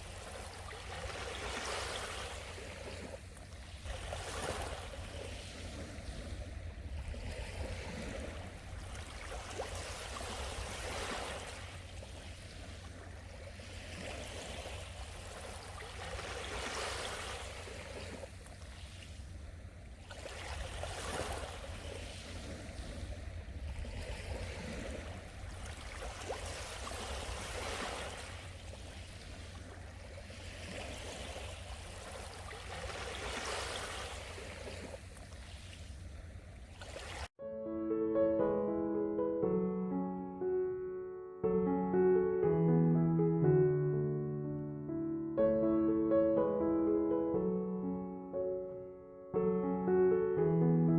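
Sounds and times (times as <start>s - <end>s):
small waves washing on shore: 0.0s - 37.3s.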